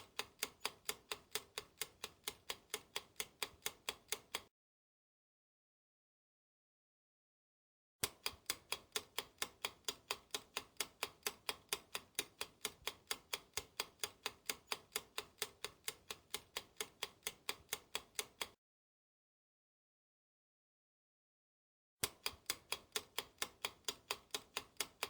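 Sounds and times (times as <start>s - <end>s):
clock ticking: 0.0s - 4.5s, 8.0s - 18.6s, 22.0s - 25.0s.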